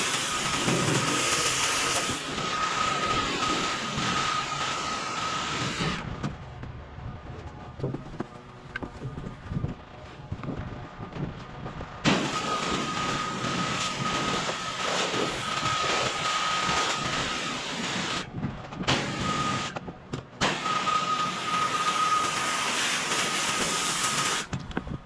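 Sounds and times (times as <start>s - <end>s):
high whistle: 0.0s - 6.0s, 12.1s - 18.3s, 18.9s - 19.8s, 20.4s - 24.5s
pressure washer spraying water: 0.0s - 6.0s, 12.1s - 18.3s, 18.9s - 19.8s, 20.4s - 24.5s
machine running: 0.0s - 25.0s.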